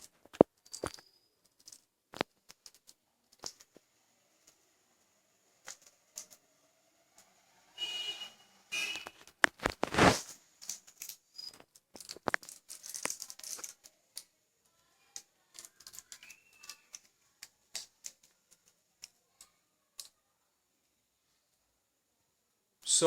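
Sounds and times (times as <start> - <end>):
small clicks and rattles: 0.0 - 4.7, 5.5 - 6.6, 10.5 - 20.2
cable rustling: 8.8 - 14.3, 15.1 - 20.2.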